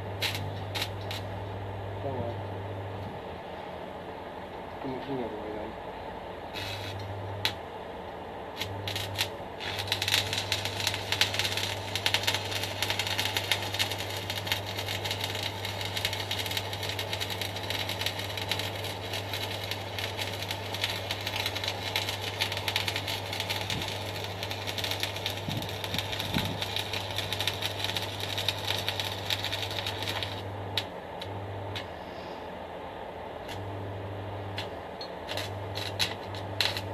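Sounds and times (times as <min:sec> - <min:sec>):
welding arc crackling: 0:00.0 - 0:01.5, 0:06.5 - 0:07.6, 0:08.5 - 0:32.0, 0:34.5 - 0:36.9
welder low hum: 0:00.0 - 0:03.6, 0:04.8 - 0:36.9.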